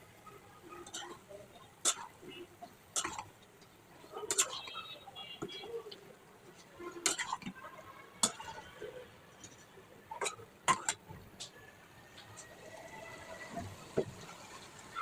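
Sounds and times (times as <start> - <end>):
spoon clinking against a pot: 4.2 - 4.8.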